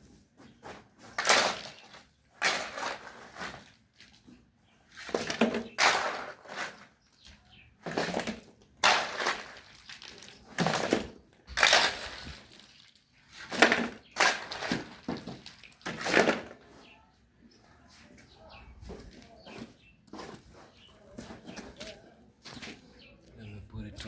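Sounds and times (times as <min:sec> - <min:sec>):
shovel scraping through stones: 0:01.0 - 0:03.8, 0:05.0 - 0:07.0, 0:07.8 - 0:16.6.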